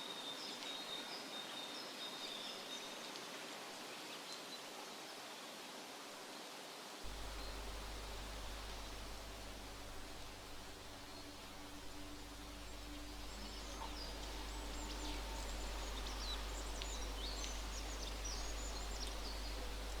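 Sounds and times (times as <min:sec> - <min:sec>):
steady outdoor hiss: 0:00.0 - 0:20.0.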